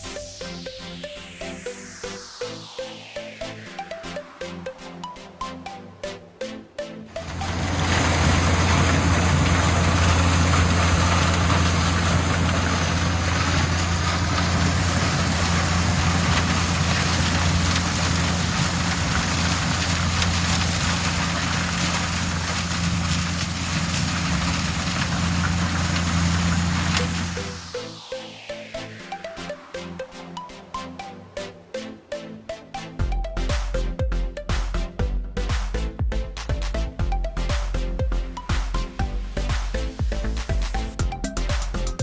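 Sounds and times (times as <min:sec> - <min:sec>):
harvester engine and machinery running: 0:07.2 - 0:27.7.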